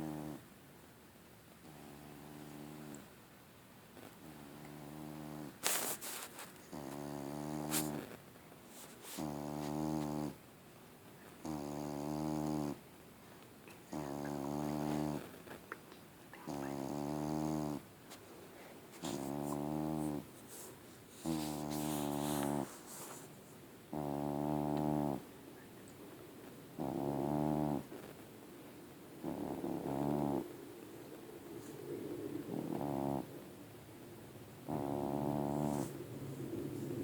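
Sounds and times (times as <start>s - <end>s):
cat snoring: 0.0s - 0.4s, 1.6s - 3.1s, 4.0s - 10.4s, 11.4s - 12.8s, 13.9s - 15.6s, 16.4s - 17.9s, 19.0s - 23.3s, 23.9s - 25.2s, 26.8s - 28.1s, 29.2s - 30.6s, 32.4s - 33.4s, 34.6s - 36.6s.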